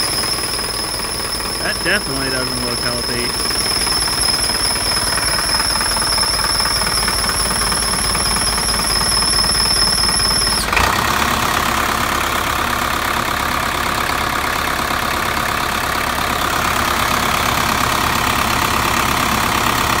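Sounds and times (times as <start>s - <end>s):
high whine: 0.0s - 10.5s
engine idling: 0.0s - 20.0s
exhaust leak ticking: 3.4s - 10.6s.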